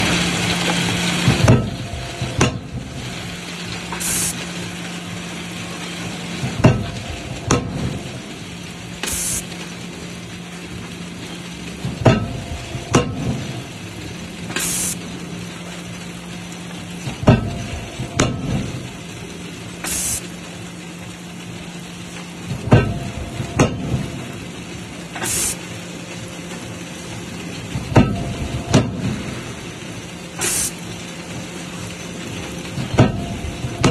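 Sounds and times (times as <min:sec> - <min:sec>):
machine hum: 0:00.0 - 0:33.9
heavy metal strike: 0:01.2 - 0:03.2, 0:06.4 - 0:08.2, 0:11.8 - 0:13.7, 0:17.1 - 0:19.0, 0:22.5 - 0:24.4, 0:27.7 - 0:29.6
short high hiss: 0:03.9 - 0:04.5, 0:09.0 - 0:09.5, 0:14.5 - 0:15.0, 0:19.8 - 0:20.3, 0:25.2 - 0:25.6, 0:30.4 - 0:30.8.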